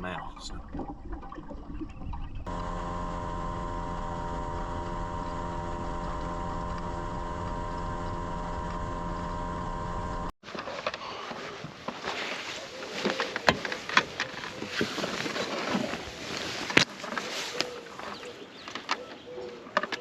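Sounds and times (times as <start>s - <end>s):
boat motor humming: 2.4s - 10.4s.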